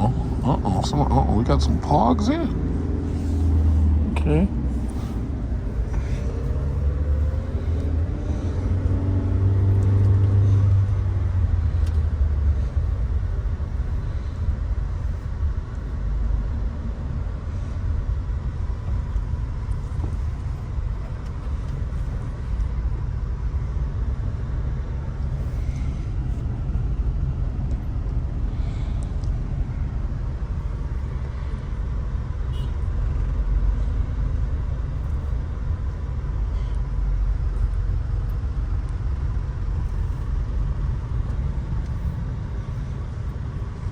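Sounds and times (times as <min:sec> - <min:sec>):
car driving rumble: 0:00.0 - 0:43.9
droning engine hum: 0:00.0 - 0:43.9.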